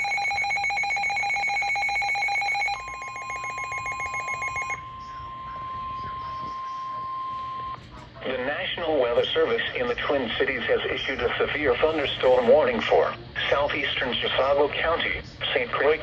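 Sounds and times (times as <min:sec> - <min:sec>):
steady alarm tone: 0:00.0 - 0:07.8.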